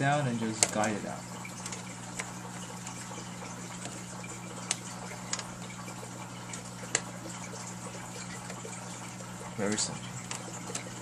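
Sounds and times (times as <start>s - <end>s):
steady low hum and hiss: 0.0s - 11.0s
small parts clicking: 4.6s - 5.5s.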